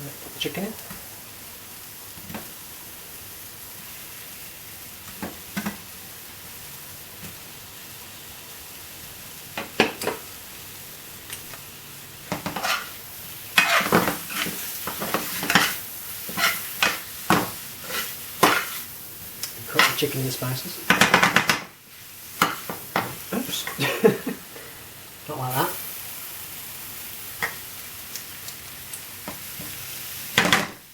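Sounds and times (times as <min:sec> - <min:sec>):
chicken sizzling in a pan: 0:00.0 - 0:30.9
spoon stirring and knocking pan: 0:12.3 - 0:12.9, 0:13.6 - 0:18.8, 0:20.9 - 0:21.7, 0:22.4 - 0:23.8.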